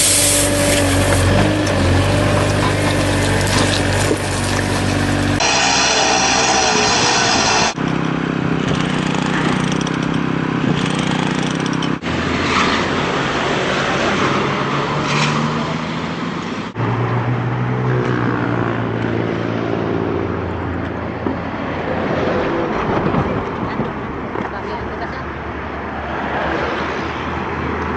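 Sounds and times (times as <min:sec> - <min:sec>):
road-repair machinery engines running: 0:00.0 - 0:26.0
worksite din: 0:02.3 - 0:07.8.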